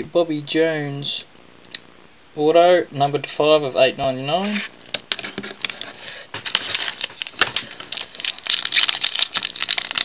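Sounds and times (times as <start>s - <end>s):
card wrapper crackling and rustling: 5.1s - 10.0s.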